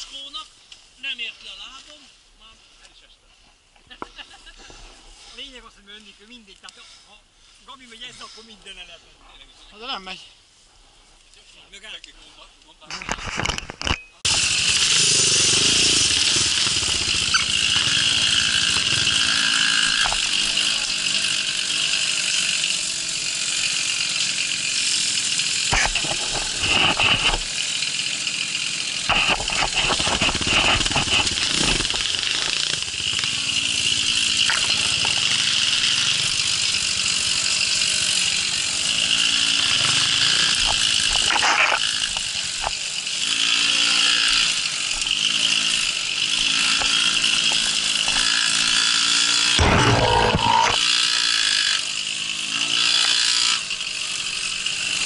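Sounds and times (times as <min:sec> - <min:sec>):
knocks and rattles: 0:13.1 - 0:20.4
two-stroke moped engine running: 0:14.3 - 0:55.0.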